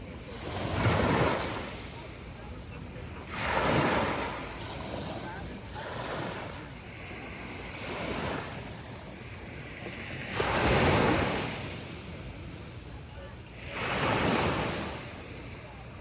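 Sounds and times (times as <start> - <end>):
surf washing on a beach: 0.0 - 16.0
large wave crashing: 3.2 - 8.7.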